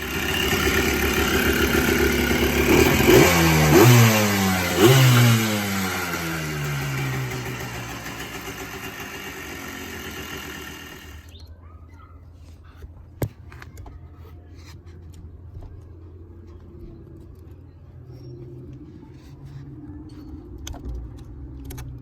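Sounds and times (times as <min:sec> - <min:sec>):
two-stroke engine idling: 0:00.0 - 0:11.4.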